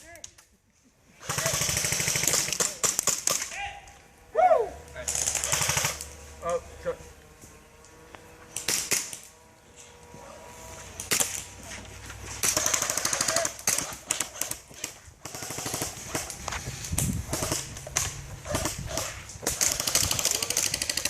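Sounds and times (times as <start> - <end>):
airsoft gun rapid bursts: 1.2 - 3.4, 5.1 - 6.0, 12.4 - 16.4, 18.4 - 21.0.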